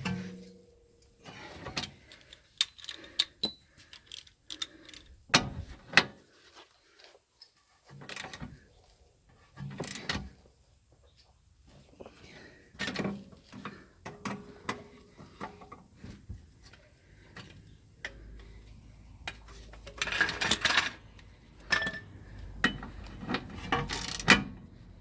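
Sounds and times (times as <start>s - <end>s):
metal tools clinking and knocking: 1.6s - 5.1s, 19.8s - 21.0s, 21.6s - 22.1s.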